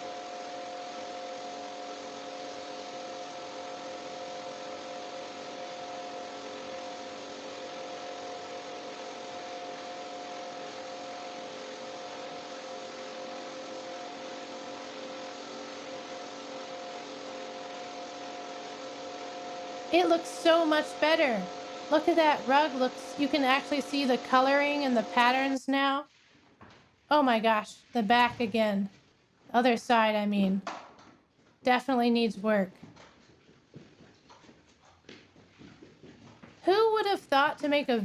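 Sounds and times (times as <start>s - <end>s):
machine hum with hiss: 0.0s - 25.6s
constant whining tones: 0.0s - 26.0s.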